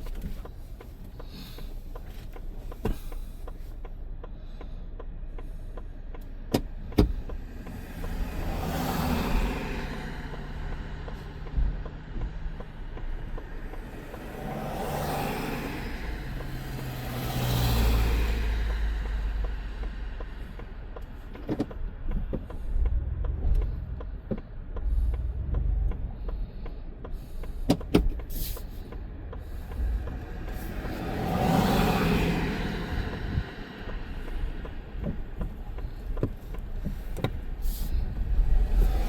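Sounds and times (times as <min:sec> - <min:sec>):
sharp clicks and knocks: 0:00.0 - 0:08.2, 0:18.7 - 0:39.0
motor vehicle rumbling: 0:00.0 - 0:39.0
passing vehicle noise: 0:05.0 - 0:39.0.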